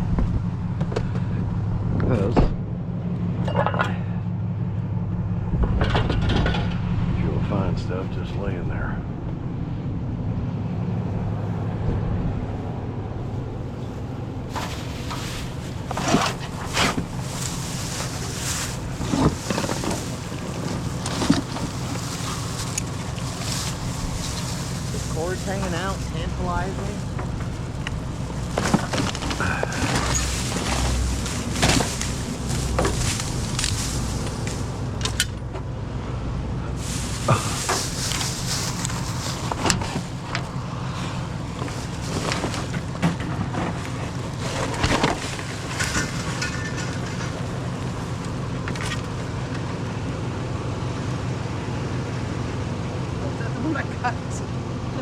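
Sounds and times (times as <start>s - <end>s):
vehicle engine idling: 0.0s - 55.0s
clattering of things handled: 3.5s - 4.0s, 14.4s - 35.6s, 36.8s - 49.8s.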